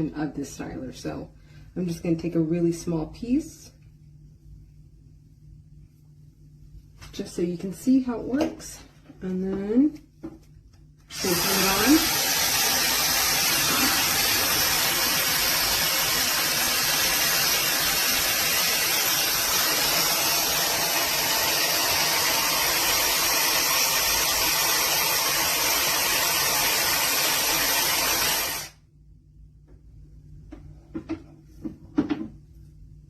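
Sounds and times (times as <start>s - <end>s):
hot air styler blowing: 11.1s - 28.8s.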